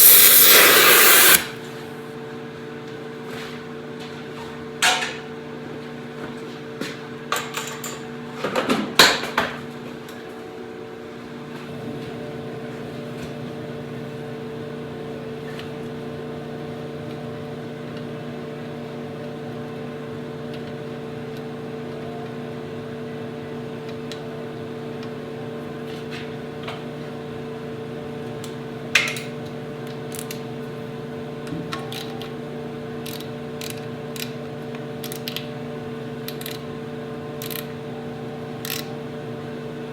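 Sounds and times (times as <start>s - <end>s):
steady machine hum: 0.0s - 1.6s.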